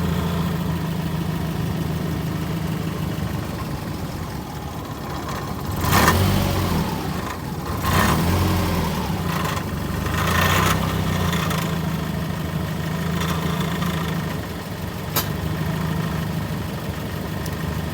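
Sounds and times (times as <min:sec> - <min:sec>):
car engine idling and revving: 0:00.0 - 0:17.9
sharp click: 0:15.1 - 0:15.4.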